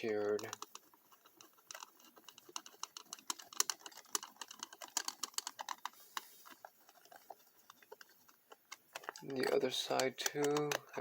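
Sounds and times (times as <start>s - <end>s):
screwdriver clicking on screws: 8.8s - 11.0s.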